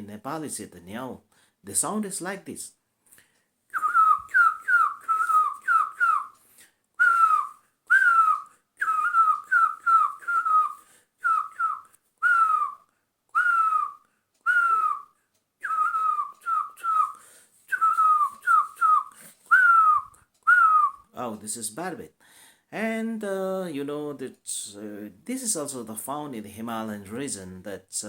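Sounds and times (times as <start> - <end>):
person whistling bird call: 3.8 - 6.4, 7.0 - 12.8, 13.4 - 21.0.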